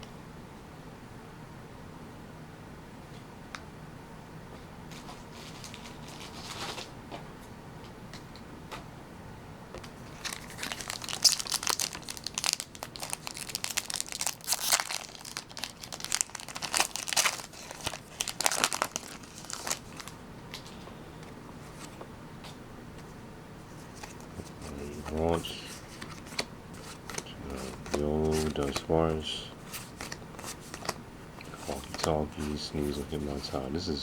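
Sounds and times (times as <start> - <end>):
foil wrapper crinkling and tearing: 5.0 - 6.9, 10.0 - 20.7.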